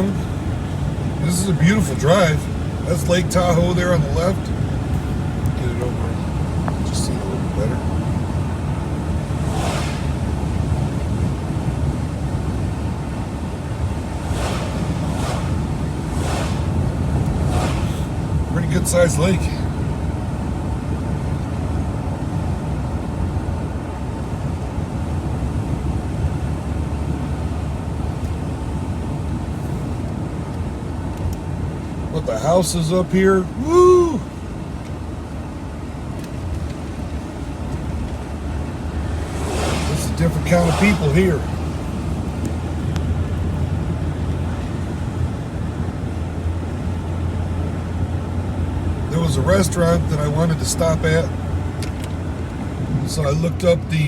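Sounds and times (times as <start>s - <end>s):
road and engine noise in cab: 0.0s - 54.0s
tyre and wind noise: 7.8s - 18.5s.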